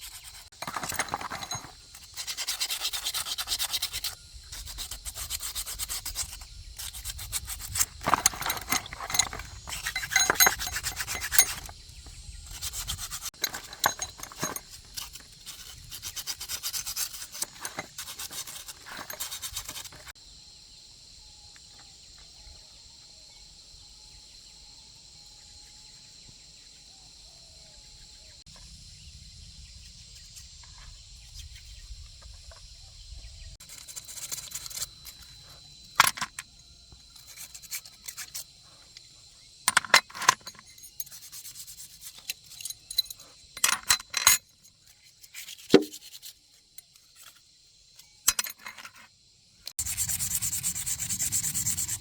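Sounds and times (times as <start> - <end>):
harsh sanding scrape: 0.0 - 11.8, 12.4 - 20.1, 49.8 - 52.0
metallic tool clinks and scrapes: 0.0 - 20.2, 33.7 - 39.1, 39.7 - 47.4, 48.0 - 49.1
high insect buzz: 49.2 - 52.0.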